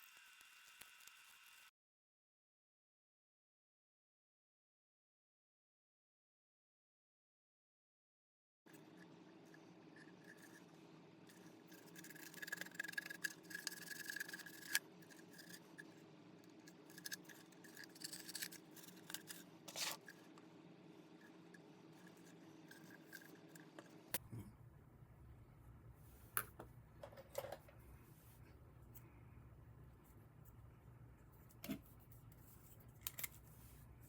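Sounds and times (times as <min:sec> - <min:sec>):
scratchy rubbing and scraping: 0:08.7 - 0:16.0, 0:16.6 - 0:20.2, 0:21.2 - 0:24.2.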